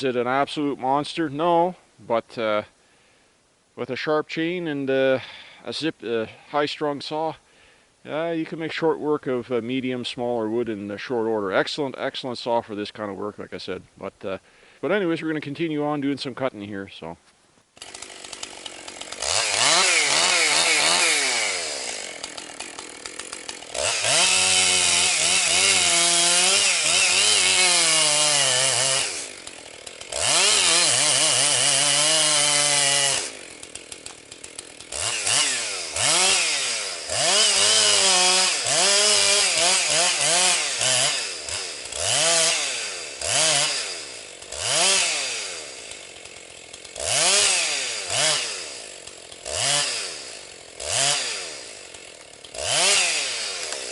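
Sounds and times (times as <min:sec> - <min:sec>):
chainsaw revving and idling: 0:17.8 - 0:53.9.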